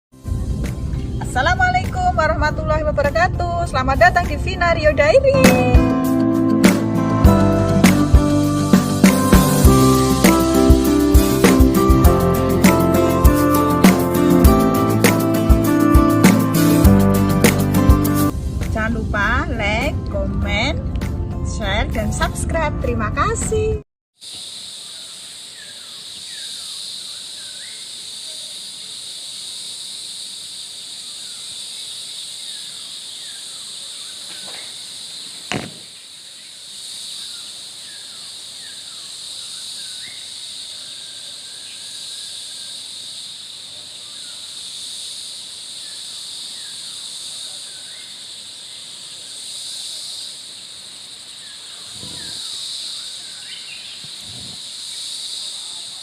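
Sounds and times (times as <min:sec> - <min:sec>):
insects droning: 0:00.2 - 0:20.9, 0:24.2 - 0:56.0
sharp click: 0:35.5 - 0:35.9
bird chirps: 0:51.4 - 0:54.6.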